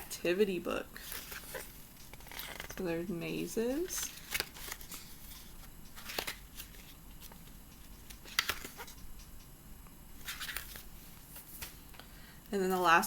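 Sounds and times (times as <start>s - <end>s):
paper pages rustling: 1.0s - 2.8s, 3.7s - 9.1s, 10.2s - 11.8s.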